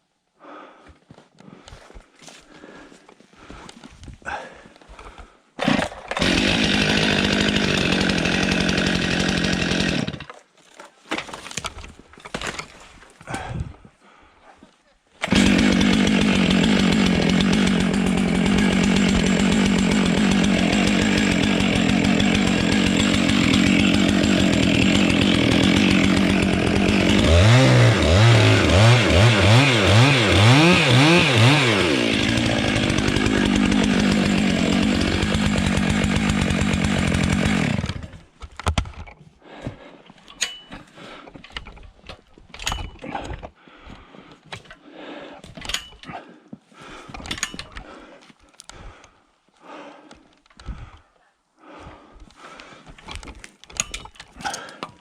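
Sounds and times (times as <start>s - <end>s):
chainsaw cutting tree: 5.6s - 10.3s, 15.2s - 38.3s.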